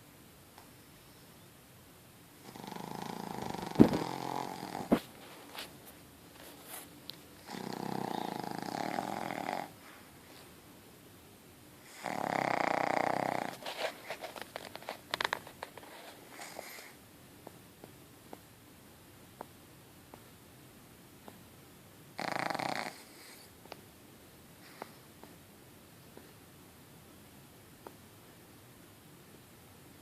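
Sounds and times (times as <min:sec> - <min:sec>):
dog snoring: 0:02.4 - 0:05.0, 0:07.4 - 0:09.8, 0:11.8 - 0:13.6, 0:22.2 - 0:23.5.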